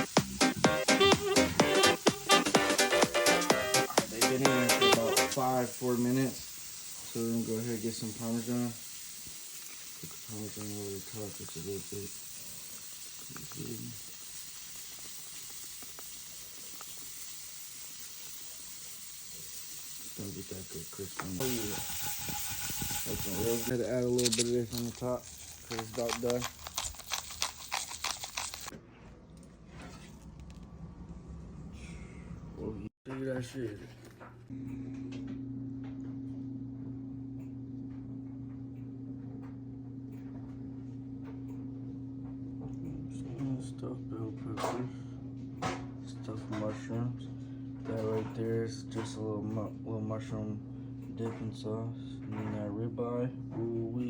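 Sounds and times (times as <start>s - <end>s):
food sizzling in a pan: 0.0s - 23.8s
low electrical hum: 4.1s - 54.0s.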